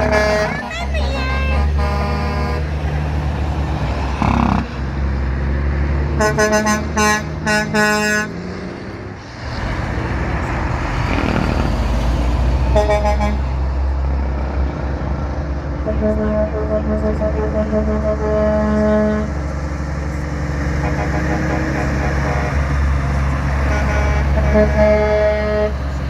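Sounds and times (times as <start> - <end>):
truck horns honking: 0.0 - 5.4, 6.0 - 8.7, 12.6 - 13.8, 15.8 - 26.0
heavy trucks rumbling past: 0.0 - 26.0.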